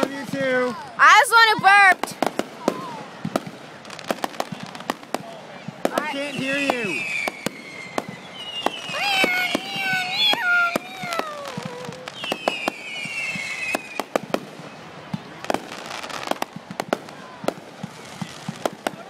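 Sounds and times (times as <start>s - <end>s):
fireworks bangs and pops: 0.0s - 19.0s
falling whistle-like tone: 6.4s - 9.3s, 12.0s - 14.1s.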